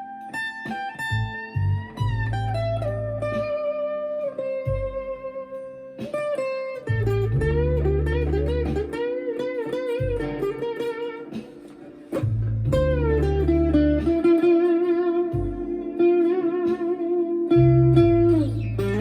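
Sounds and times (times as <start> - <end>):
overdriven guitar lead with bends: 0.0 - 19.0
low bass notes: 1.2 - 3.6, 6.9 - 9.2, 10.0 - 10.7, 12.2 - 19.0.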